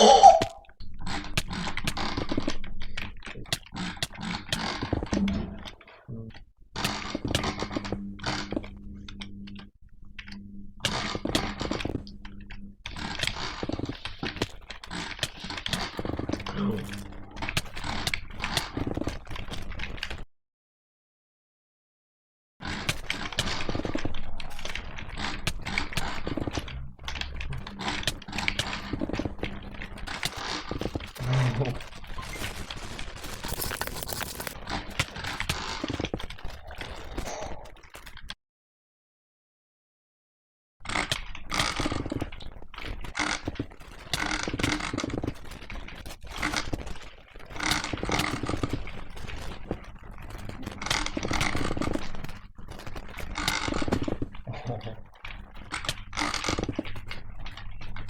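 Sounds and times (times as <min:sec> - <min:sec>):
steady low hum: 0:07.4 - 0:12.9
scraping and rustling: 0:31.8 - 0:34.6.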